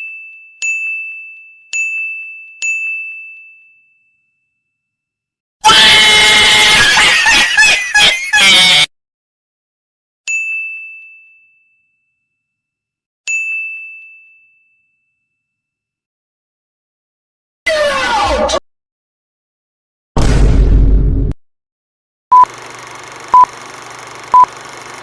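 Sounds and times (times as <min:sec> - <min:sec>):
high bell dings: 0:10.3 - 0:12.6, 0:13.3 - 0:15.8.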